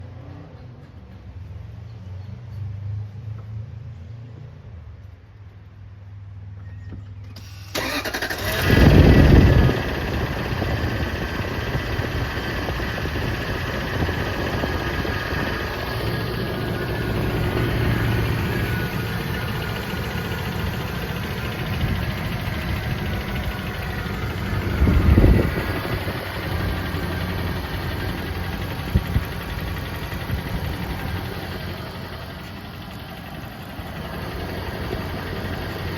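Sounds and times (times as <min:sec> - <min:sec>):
car engine starting and idling: 0:07.2 - 0:35.9
engine ticking noise: 0:07.8 - 0:35.9.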